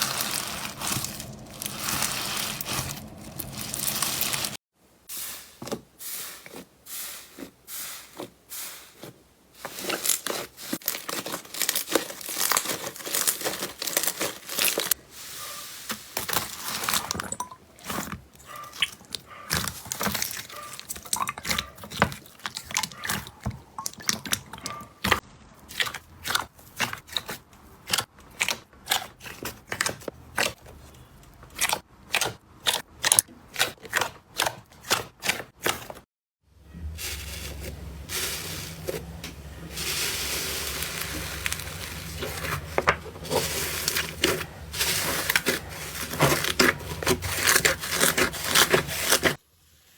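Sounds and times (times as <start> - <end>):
slime crackling and crunching: 0.0 - 4.6, 9.6 - 15.0, 15.9 - 22.8, 36.9 - 49.4.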